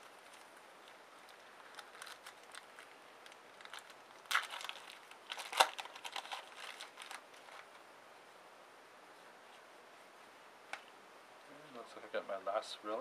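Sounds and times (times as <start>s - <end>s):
foil wrapper crinkling: 0.0s - 7.8s.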